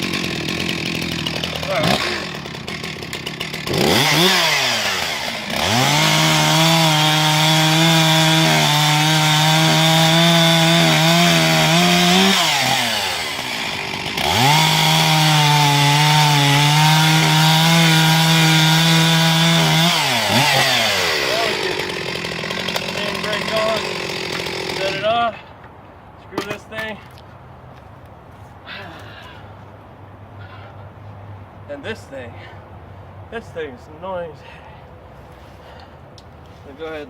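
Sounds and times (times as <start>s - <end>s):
chainsaw revving: 0.0s - 25.4s.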